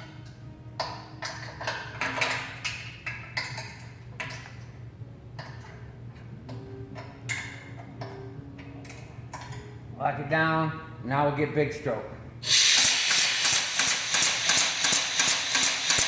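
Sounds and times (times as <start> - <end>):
pneumatic air bursts: 12.4 - 16.0.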